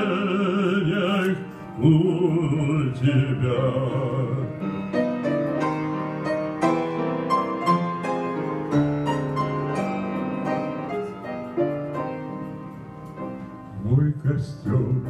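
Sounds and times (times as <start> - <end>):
grand piano melody: 0.0 - 15.0.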